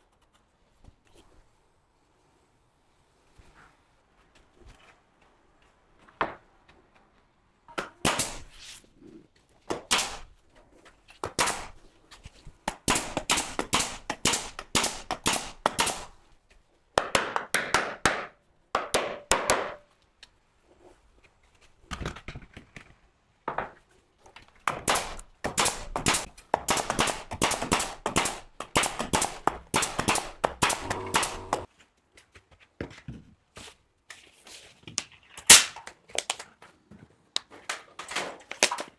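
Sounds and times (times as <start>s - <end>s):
rapid sharp cracks and knocks: 7.8s - 8.6s, 9.7s - 10.3s, 11.2s - 11.8s, 12.7s - 16.3s, 24.6s - 31.7s.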